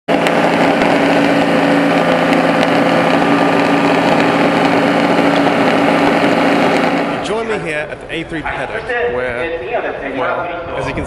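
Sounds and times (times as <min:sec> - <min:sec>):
car engine idling: 0:00.1 - 0:08.6.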